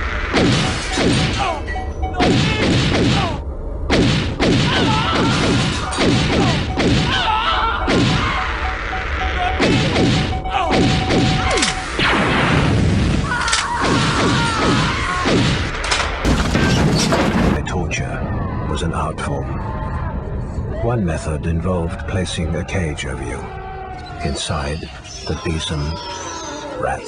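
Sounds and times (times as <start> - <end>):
crashes and thuds: 16.3 - 17.7.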